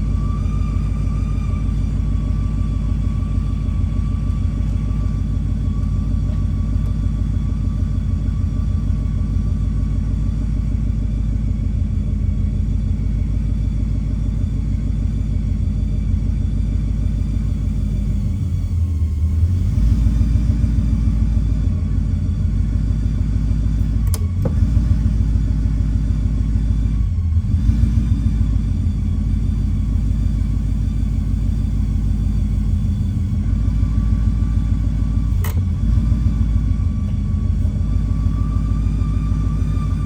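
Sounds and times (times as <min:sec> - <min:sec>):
faint high whistle: 0:00.0 - 0:10.4, 0:28.4 - 0:40.0
car engine running: 0:00.0 - 0:40.0.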